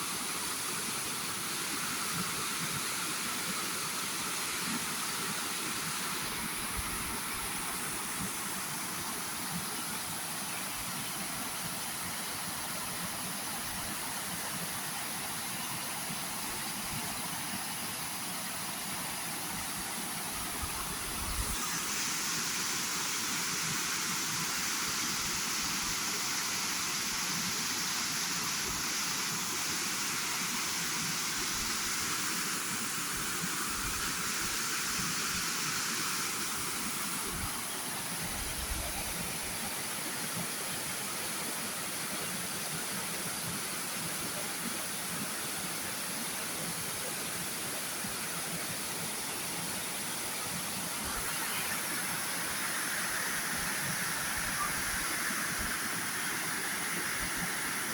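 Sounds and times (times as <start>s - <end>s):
waterfall rushing: 3.2s - 57.9s.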